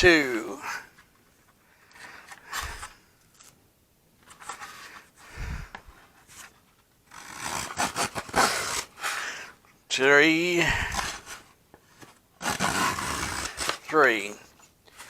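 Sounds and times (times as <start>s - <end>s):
hand plane scraping wood: 7.1s - 9.2s, 12.4s - 13.9s.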